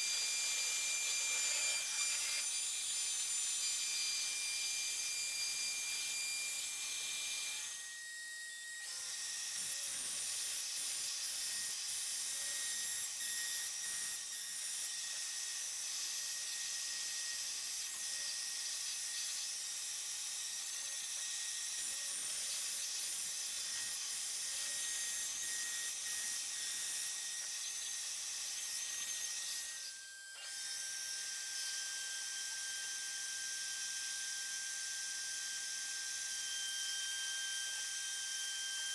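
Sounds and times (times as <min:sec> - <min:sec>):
router spindle whining: 0:00.0 - 0:02.5, 0:24.8 - 0:38.9.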